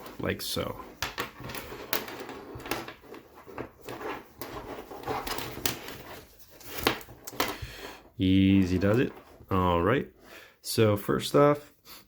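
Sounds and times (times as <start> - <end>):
strap rustling and clicking: 0.0 - 9.6.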